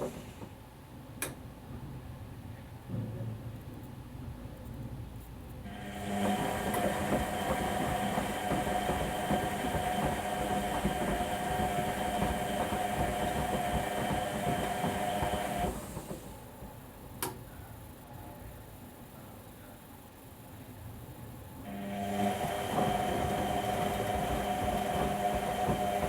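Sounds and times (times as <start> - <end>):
washing machine motor whining: 5.7 - 16.4, 21.7 - 26.0.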